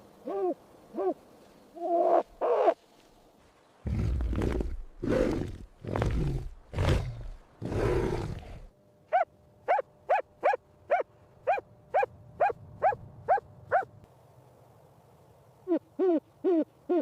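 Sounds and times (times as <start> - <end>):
big cat roaring: 3.9 - 8.7.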